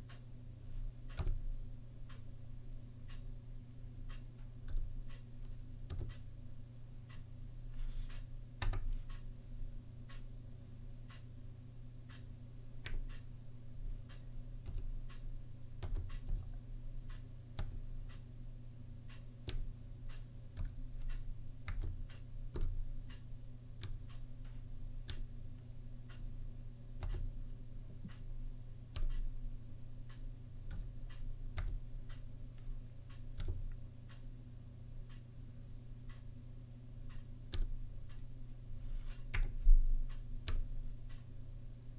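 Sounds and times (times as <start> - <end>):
faint low hum: 0.0 - 41.9
keyboard key clicks: 5.9 - 6.2.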